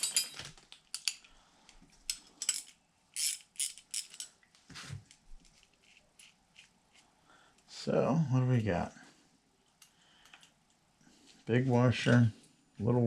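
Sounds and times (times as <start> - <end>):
metal tools clinking: 0.0 - 1.3, 2.1 - 4.4
ratchet clicks: 3.2 - 4.3.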